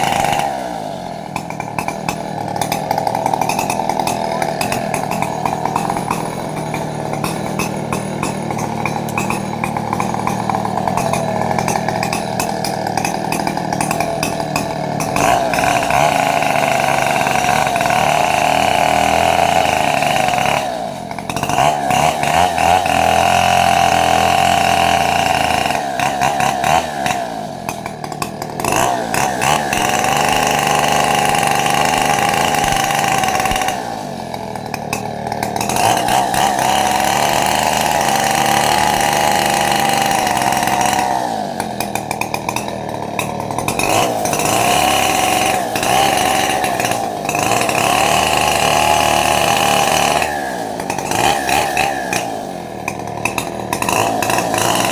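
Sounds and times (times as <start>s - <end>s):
chainsaw cutting wood: 0.0s - 54.9s.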